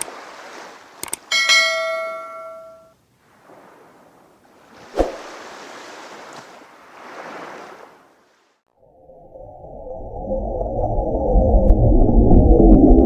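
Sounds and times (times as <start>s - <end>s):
sea waves washing in: 0.0s - 9.4s.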